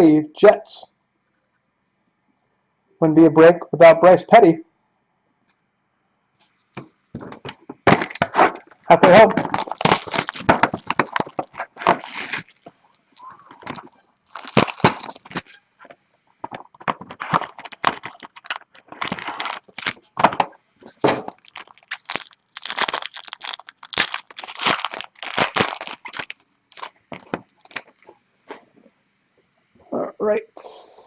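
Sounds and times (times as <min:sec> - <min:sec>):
plastic wrapping crinkling and tearing: 0:07.2 - 0:15.6, 0:16.4 - 0:28.6.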